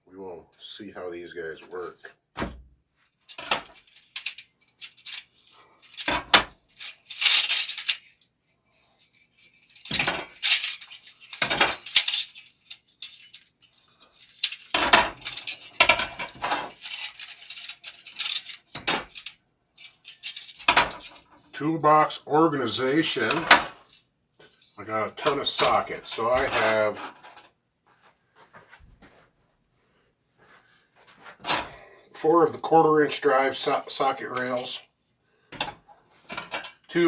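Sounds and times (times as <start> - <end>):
metal tools clinking: 3.3 - 8.2, 9.0 - 21.3, 34.3 - 34.8.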